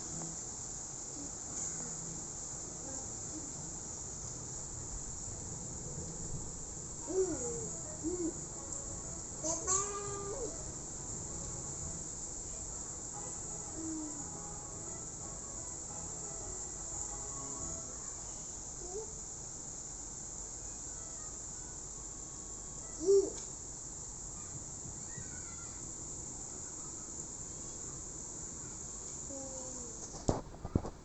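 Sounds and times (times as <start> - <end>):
insects chorus: 0.0 - 30.4
faint hiss: 0.0 - 31.0
faint chirps: 12.7 - 16.0, 20.5 - 30.0.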